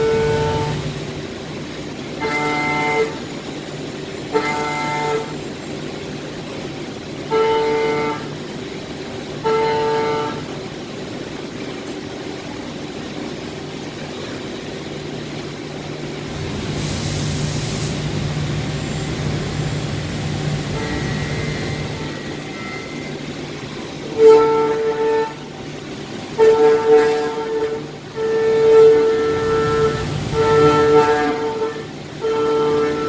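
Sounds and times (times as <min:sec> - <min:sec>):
steady machine hum: 0:00.0 - 0:33.0
brief hiss: 0:16.4 - 0:19.1.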